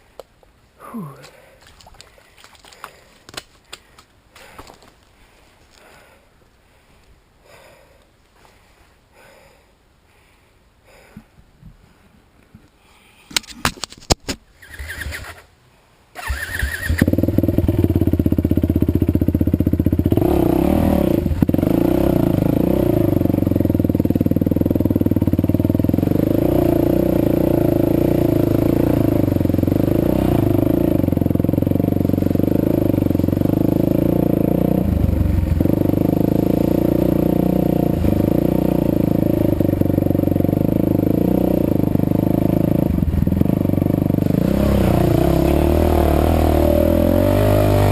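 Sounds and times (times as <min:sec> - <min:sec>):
motorcycle engine idling: 0:16.6 - 0:20.2, 0:21.2 - 0:47.0.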